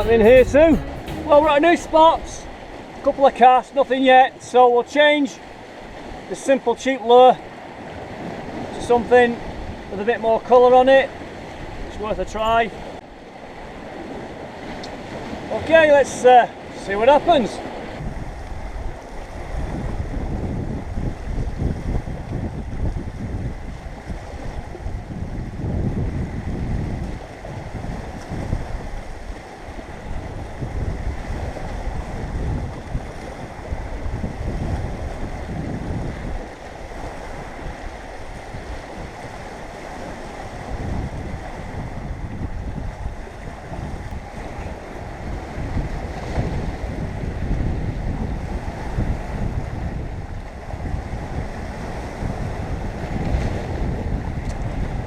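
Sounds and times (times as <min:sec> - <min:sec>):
sea waves washing on shore: 0:00.0 - 0:55.0
wind buffeting microphone: 0:17.7 - 0:55.0.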